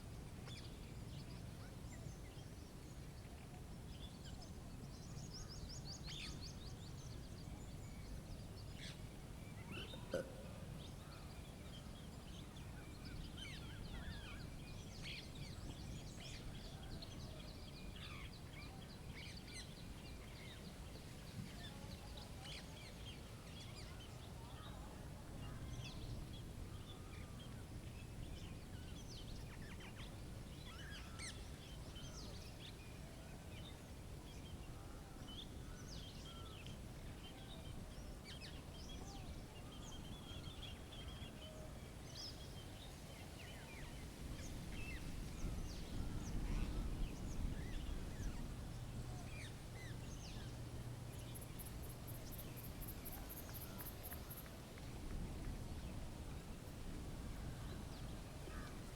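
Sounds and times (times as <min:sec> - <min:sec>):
small birds chirping: 0:42.2 - 0:54.5.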